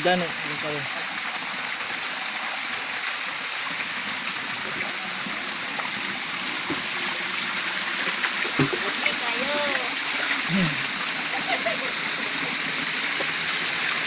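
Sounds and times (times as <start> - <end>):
stream water rushing: 0.0 - 14.0.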